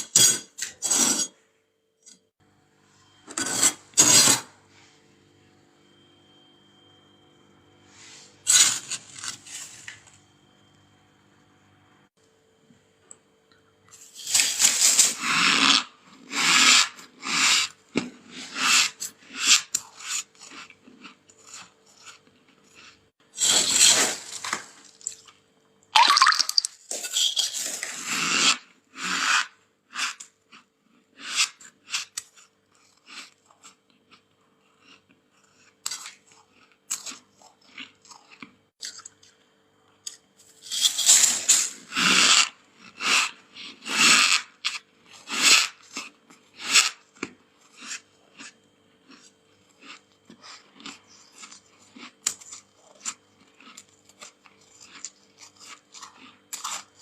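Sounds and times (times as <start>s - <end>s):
frost crunched and chewed: 47.2s - 57.0s.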